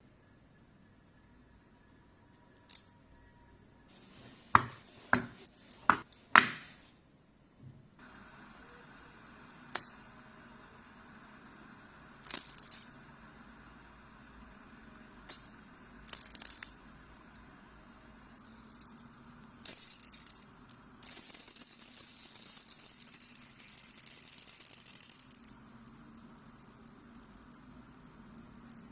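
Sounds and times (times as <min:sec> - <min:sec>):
fidget spinner metallic whirring: 0:08.0 - 0:28.9.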